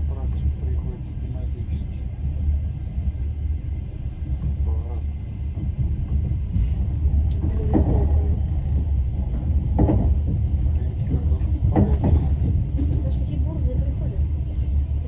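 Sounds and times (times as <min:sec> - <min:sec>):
train wheels rumbling on track: 0:00.0 - 0:15.0.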